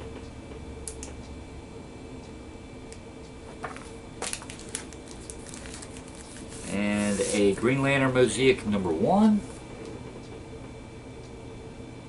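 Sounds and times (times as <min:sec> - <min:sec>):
low room hum: 0:00.0 - 0:12.0
paper rustling and tapping: 0:03.5 - 0:07.4.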